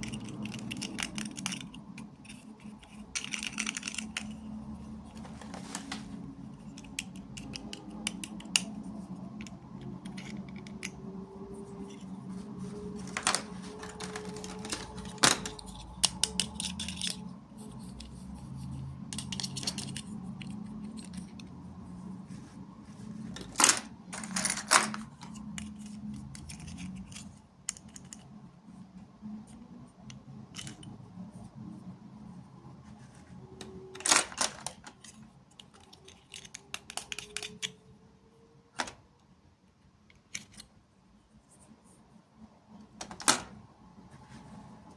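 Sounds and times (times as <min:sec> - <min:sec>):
plastic toy pieces clicking: 0:00.0 - 0:04.5, 0:06.6 - 0:11.0, 0:13.2 - 0:17.3, 0:23.4 - 0:28.3, 0:33.9 - 0:37.8
packaging rustling: 0:12.6 - 0:15.7.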